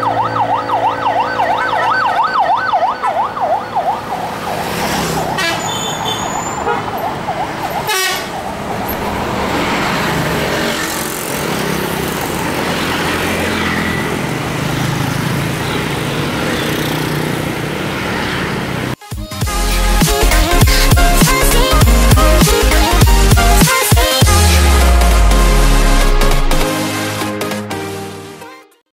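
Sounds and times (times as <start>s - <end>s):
siren warbling: 0.0s - 5.2s, 24.2s - 26.6s
heavy vehicle engine and road noise: 0.0s - 19.0s, 19.6s - 26.7s.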